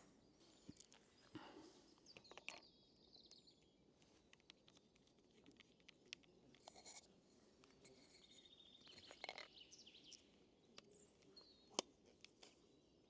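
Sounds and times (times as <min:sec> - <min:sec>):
birdsong: 0:00.0 - 0:04.6, 0:07.6 - 0:13.0.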